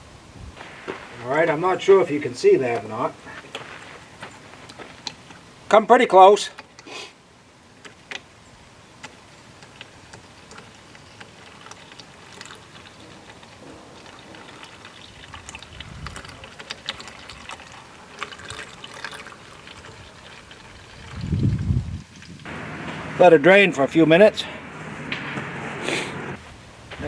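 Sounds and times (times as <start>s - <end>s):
oil pouring into a bucket: 9.6s - 22.4s.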